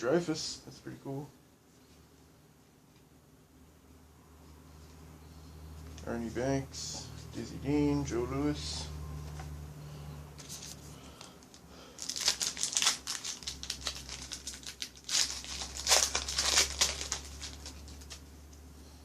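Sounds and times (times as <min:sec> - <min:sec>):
foil wrapper crinkling and tearing: 0:10.4 - 0:18.2.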